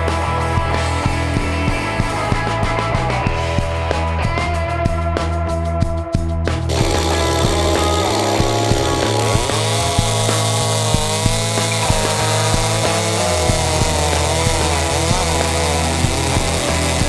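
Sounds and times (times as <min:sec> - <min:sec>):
chainsaw cutting wood: 0:06.7 - 0:17.0.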